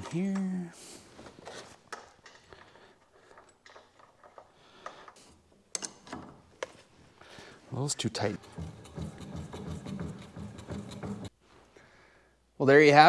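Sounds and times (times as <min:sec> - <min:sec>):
metal washers and nut clinking: 0:03.3 - 0:06.7.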